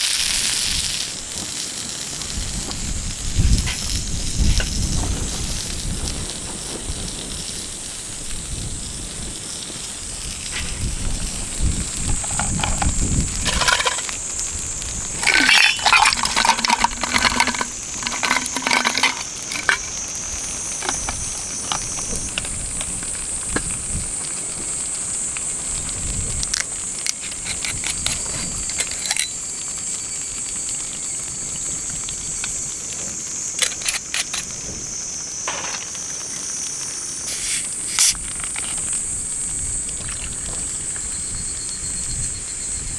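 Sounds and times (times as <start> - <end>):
clicks and metallic clinks: 12.1 - 14.1, 15.2 - 20.0, 20.8 - 22.5, 26.6 - 29.4, 33.6 - 34.6, 35.5 - 36.0.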